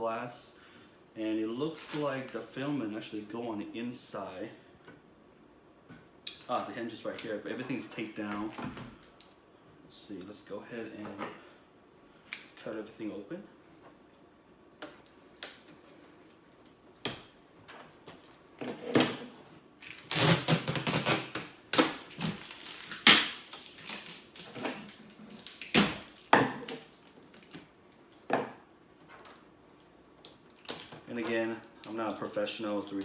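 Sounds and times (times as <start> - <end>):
packing tape clicks and scrapes: 19.8 - 27.7.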